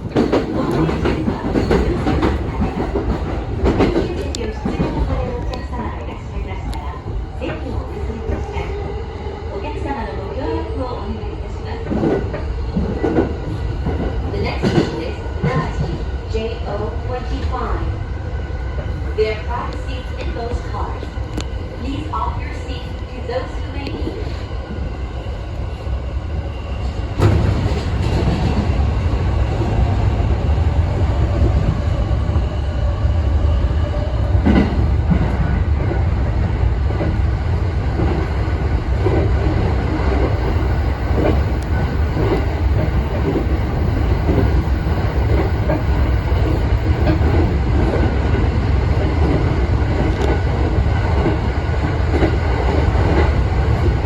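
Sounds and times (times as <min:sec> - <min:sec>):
train rumble inside carriage: 0:00.0 - 0:54.0.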